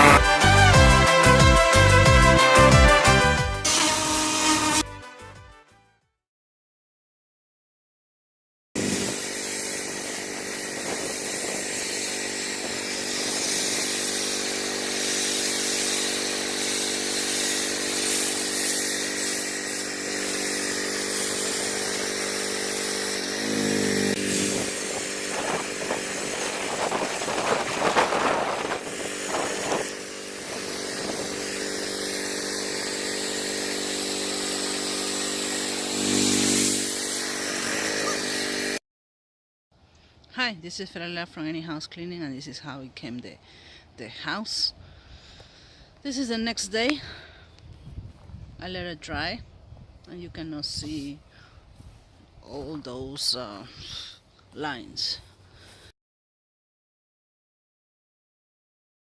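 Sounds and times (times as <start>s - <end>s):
pressure washer engine running: 0.0s - 4.8s, 8.8s - 38.8s
water spray hissing: 8.8s - 38.8s.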